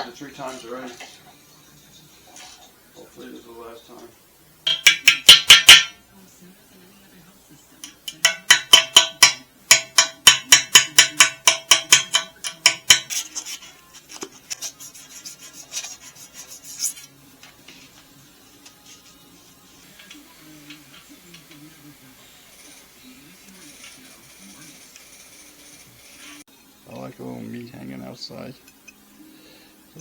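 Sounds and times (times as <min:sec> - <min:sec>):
hand tool scraping metal: 0:08.1 - 0:17.1
light scratching: 0:13.0 - 0:18.1.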